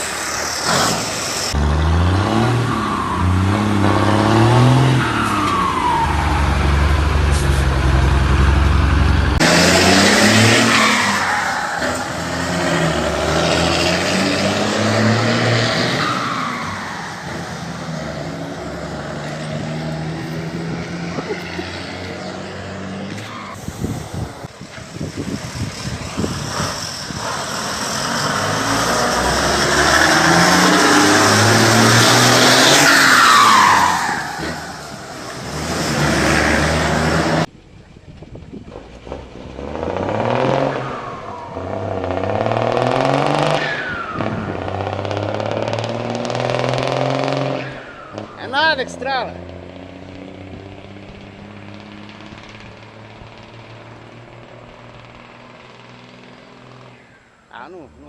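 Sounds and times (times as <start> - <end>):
diesel engine revving: 0.0 - 37.6, 38.5 - 58.0
rapid crackling: 49.4 - 56.5.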